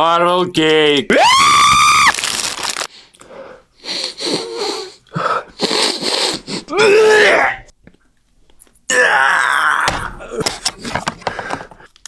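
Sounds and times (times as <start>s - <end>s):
person making breathy vocal sounds: 3.8s - 6.9s.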